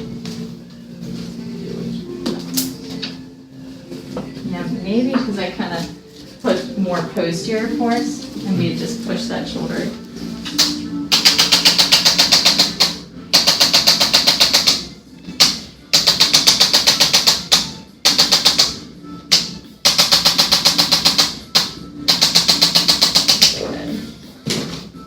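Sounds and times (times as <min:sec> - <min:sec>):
rapid mechanical tapping: 0:10.6 - 0:23.6.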